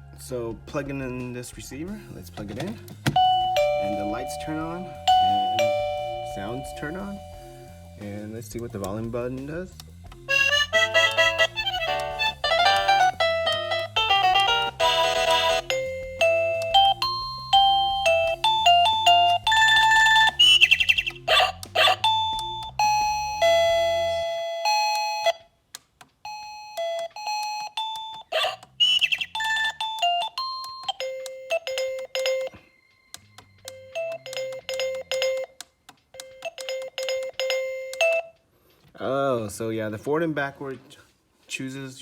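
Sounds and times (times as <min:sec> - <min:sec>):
electronic doorbell chime melodies: 0:03.1 - 0:08.3, 0:10.3 - 0:25.4, 0:26.2 - 0:35.6, 0:36.2 - 0:38.4.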